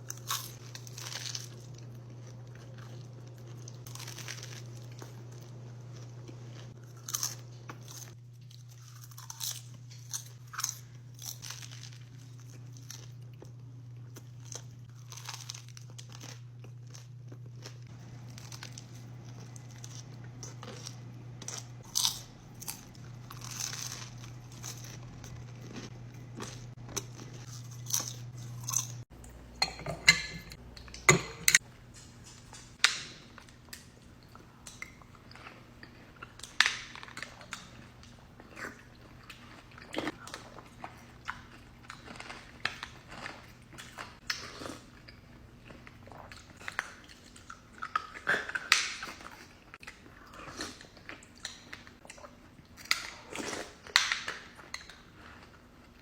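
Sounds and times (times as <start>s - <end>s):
chewing crunchy food: 0.0s - 29.4s, 32.1s - 56.0s
low hum: 9.6s - 32.8s.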